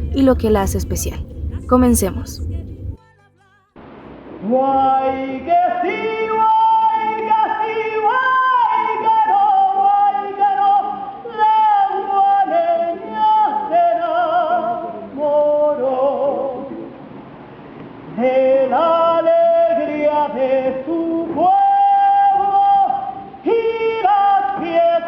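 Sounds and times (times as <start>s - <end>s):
person singing wordless notes: 0.0s - 2.4s.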